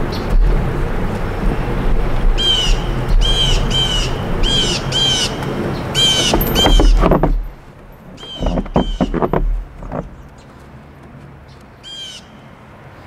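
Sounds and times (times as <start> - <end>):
bird calling: 1.5 - 10.6.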